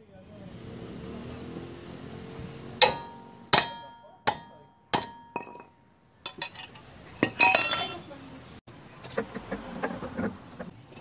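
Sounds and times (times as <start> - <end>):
metal pieces clinking: 5.3 - 8.2.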